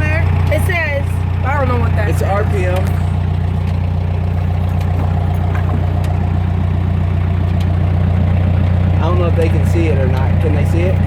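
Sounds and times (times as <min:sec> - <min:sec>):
diesel engine idling: 0:00.0 - 0:11.0.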